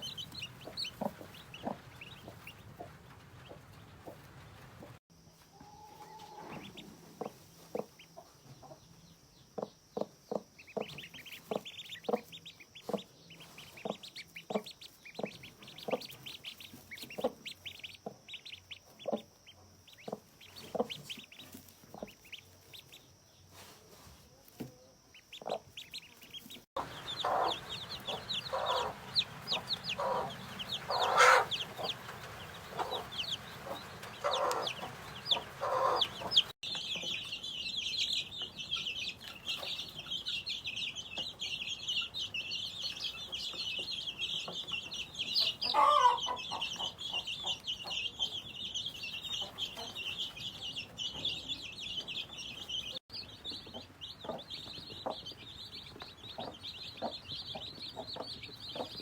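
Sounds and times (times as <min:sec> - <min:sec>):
hen clucking: 0:00.0 - 0:05.0, 0:09.6 - 0:22.9, 0:25.1 - 0:37.3, 0:43.0 - 0:48.5
chicks peeping: 0:00.0 - 0:59.0
hen squawk: 0:30.9 - 0:31.6.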